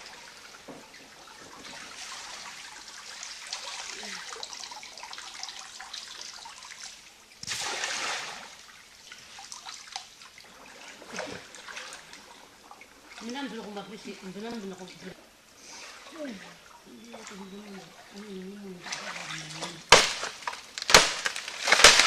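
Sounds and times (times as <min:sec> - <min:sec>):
small water drips: 0:00.0 - 0:22.0
water trickling and splashing: 0:00.0 - 0:22.0
loud water splash: 0:07.4 - 0:08.7, 0:18.8 - 0:22.0.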